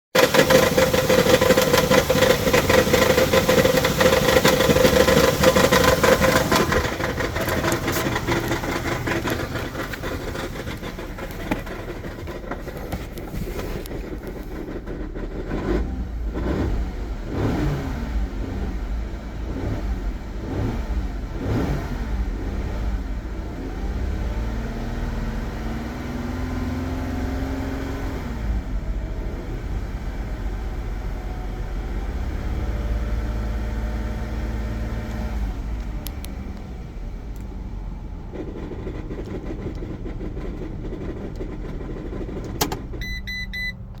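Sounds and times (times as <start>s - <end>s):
engine ticking noise: 0.1s - 17.6s, 35.1s - 44.0s
engine revving: 0.2s - 13.2s, 14.1s - 28.6s
short high beeps: 43.0s - 43.8s.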